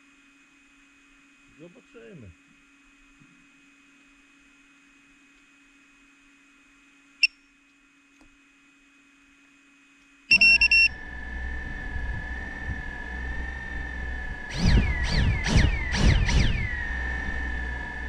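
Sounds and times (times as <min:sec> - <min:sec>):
quick high beeps: 0:10.3 - 0:10.9
short beep: 0:10.3 - 0:10.9
drone motors idle whine: 0:10.3 - 0:18.0.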